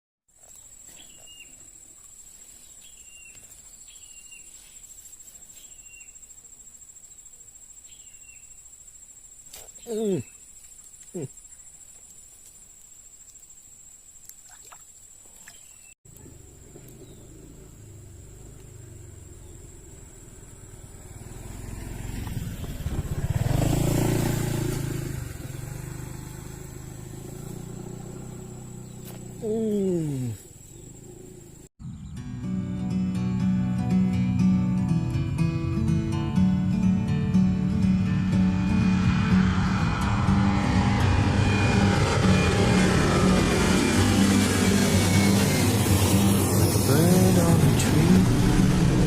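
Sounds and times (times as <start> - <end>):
high insect trill: 0.4 - 31.7
vehicle engine passing by: 16.1 - 32.0, 37.3 - 49.0.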